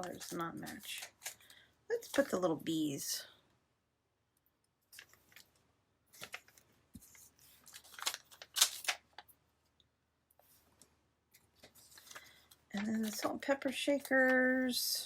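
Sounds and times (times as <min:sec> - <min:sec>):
paper crinkling: 0:00.0 - 0:02.6, 0:04.9 - 0:09.4, 0:10.4 - 0:15.0.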